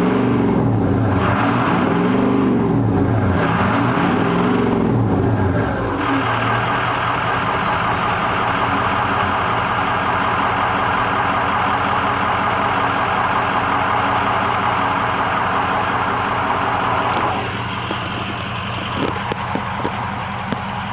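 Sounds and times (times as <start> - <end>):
diesel van engine idling: 0.0 - 20.9
high turbo whistle: 5.8 - 7.6.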